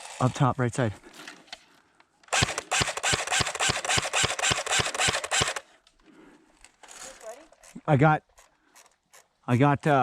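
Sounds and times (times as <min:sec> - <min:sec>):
whirring gun mechanism: 0:02.2 - 0:05.7
airsoft gun firing a burst: 0:02.3 - 0:05.6.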